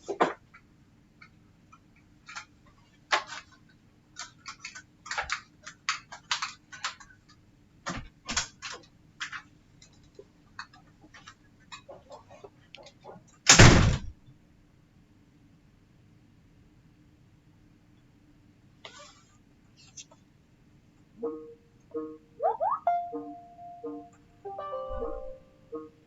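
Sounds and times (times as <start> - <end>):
small clicks and taps of parts: 0.5 - 13.0
loud thump: 13.6 - 14.2.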